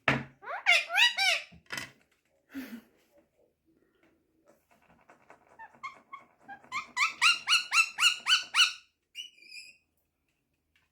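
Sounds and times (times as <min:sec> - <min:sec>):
parrot squawking: 0:00.4 - 0:01.5, 0:05.6 - 0:09.7.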